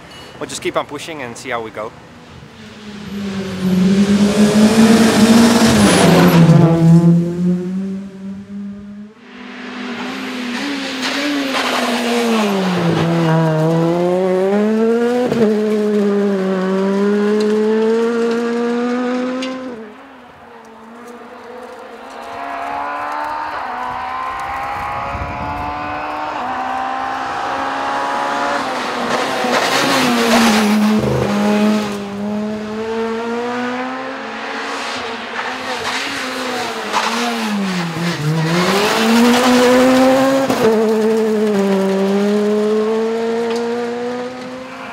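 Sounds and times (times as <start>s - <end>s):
rally car engines revving: 2.0s - 44.9s
car passing by: 2.3s - 44.9s.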